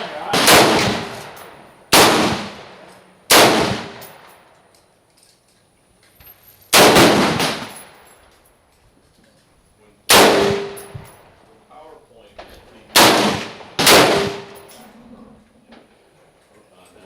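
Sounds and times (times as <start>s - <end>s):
rifle shots with echo: 0.0s - 4.6s, 6.7s - 8.1s, 10.1s - 11.2s, 12.9s - 14.7s.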